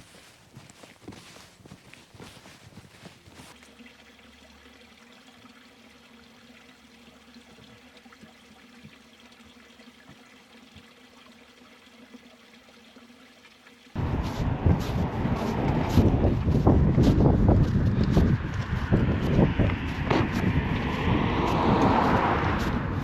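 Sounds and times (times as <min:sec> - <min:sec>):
trickle of running water: 0:00.1 - 0:16.7
loud rushing noise: 0:14.0 - 0:23.0
low hum: 0:14.0 - 0:23.0.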